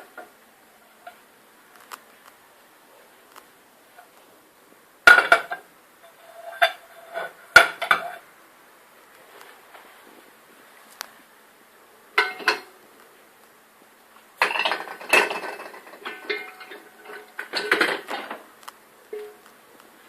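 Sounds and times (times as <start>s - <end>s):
dishes and cutlery clattering: 12.2s - 12.7s, 14.4s - 18.4s.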